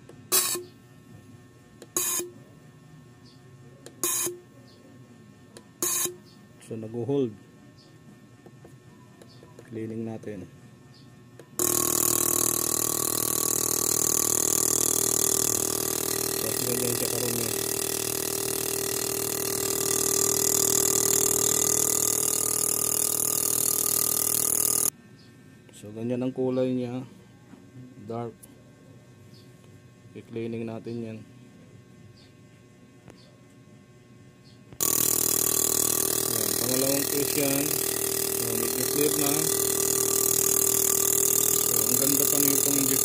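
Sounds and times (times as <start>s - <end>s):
injector buzz: 0.0s - 4.8s, 5.4s - 10.5s, 11.3s - 24.9s, 34.7s - 43.0s
machine humming: 0.0s - 33.2s, 33.8s - 43.0s
fuel injector hissing sprays: 11.6s - 24.9s, 34.8s - 43.0s.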